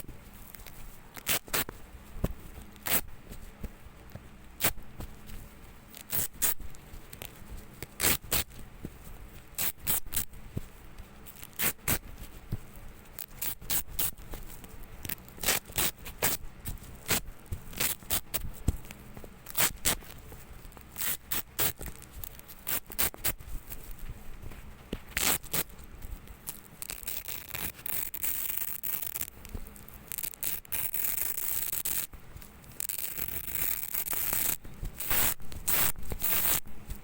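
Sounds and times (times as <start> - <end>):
velcro ripping apart: 0.0 - 1.8, 2.8 - 3.1, 4.6 - 5.1, 5.9 - 8.6, 9.5 - 10.3, 11.3 - 12.0, 13.2 - 18.4, 19.4 - 20.2, 20.9 - 23.9, 25.1 - 25.8, 26.4 - 32.1, 32.7 - 36.7.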